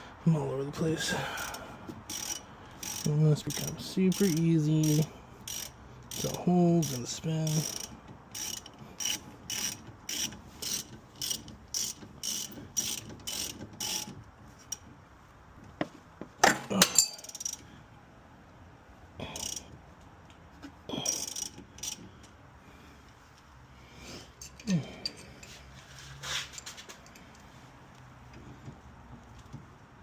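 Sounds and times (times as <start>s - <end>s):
ratchet wrench clicking: 1.4s - 14.8s, 17.0s - 17.7s, 19.2s - 19.8s, 21.0s - 22.4s.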